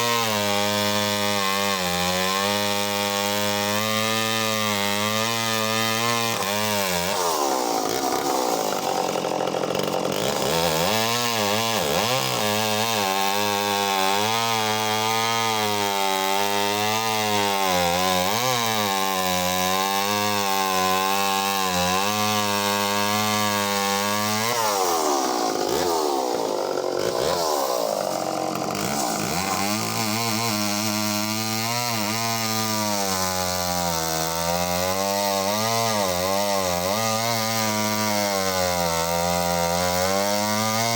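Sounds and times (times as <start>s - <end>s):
chainsaw cutting logs: 0.0s - 40.9s.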